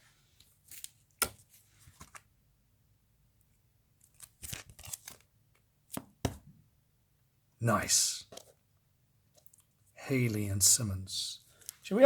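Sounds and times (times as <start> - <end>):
comic books rustling: 0.2 - 2.3, 4.0 - 5.3.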